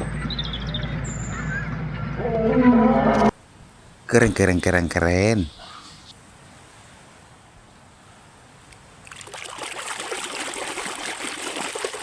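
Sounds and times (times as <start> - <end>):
water splashing and trickling: 8.6 - 12.0.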